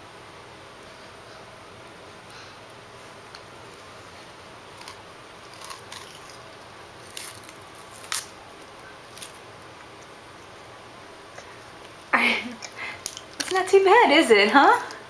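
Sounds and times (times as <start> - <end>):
child crunching raw onion: 3.3 - 10.7, 11.3 - 13.5.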